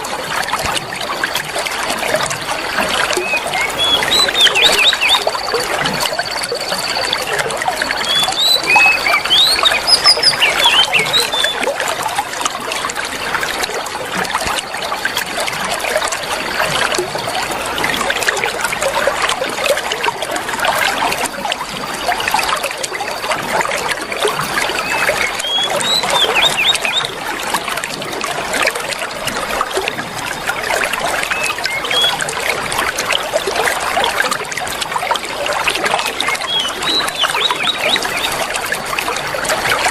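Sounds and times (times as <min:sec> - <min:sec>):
water trickling and splashing: 0:00.0 - 0:39.9
bird chirps: 0:03.0 - 0:11.7, 0:24.6 - 0:27.2, 0:31.2 - 0:32.2, 0:36.1 - 0:38.5
bird high whistles: 0:03.2 - 0:07.2, 0:07.8 - 0:11.7, 0:24.8 - 0:27.1, 0:31.3 - 0:32.2, 0:36.2 - 0:38.4.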